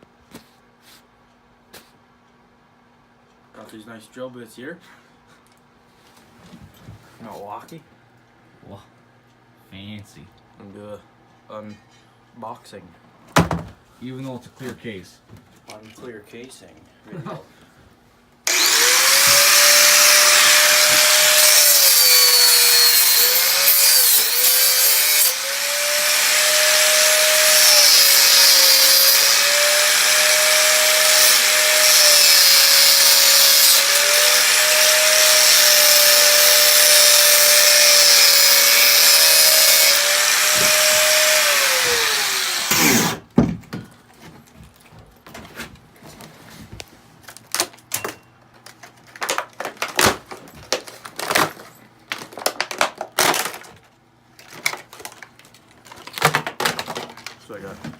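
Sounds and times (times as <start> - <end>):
electric drill whining: 18.5 - 43.2.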